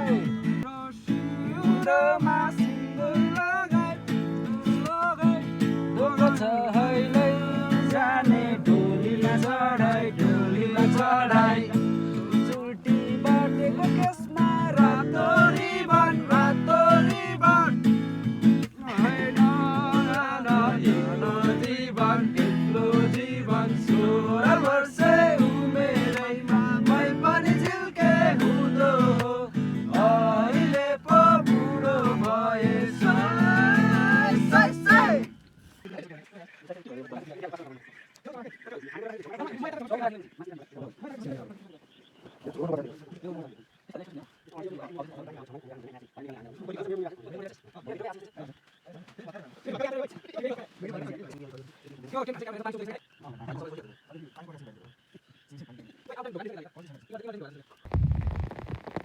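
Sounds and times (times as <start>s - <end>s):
strummed acoustic guitar: 0.0s - 35.4s
voices singing a folk song: 0.0s - 35.8s.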